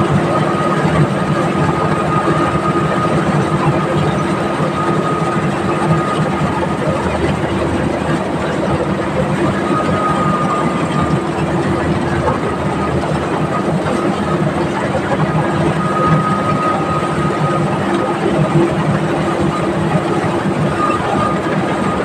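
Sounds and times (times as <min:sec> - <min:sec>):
high whine: 0:00.0 - 0:22.0
threshing machine engine running: 0:00.0 - 0:22.0.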